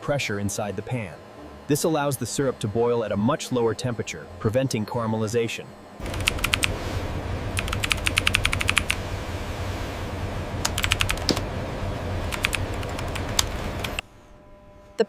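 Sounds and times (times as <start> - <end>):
machinery humming: 0.0 - 15.0
rapid sharp ticking: 6.0 - 6.8, 7.5 - 9.0, 10.6 - 11.5, 12.2 - 14.0.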